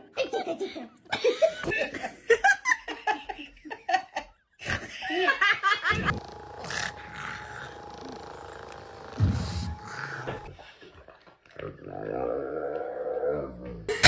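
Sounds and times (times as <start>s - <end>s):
dog growling: 6.0s - 10.6s
dog vocalizing: 6.0s - 10.6s.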